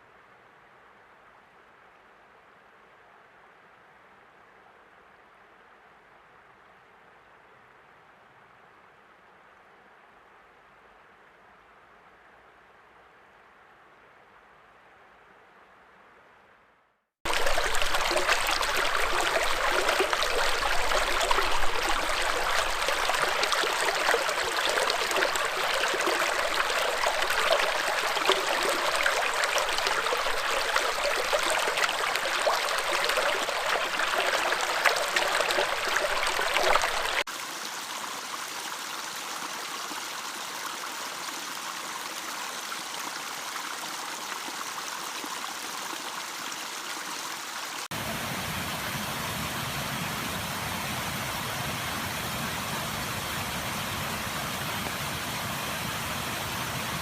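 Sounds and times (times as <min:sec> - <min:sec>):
stream water flowing: 0:17.2 - 0:57.0.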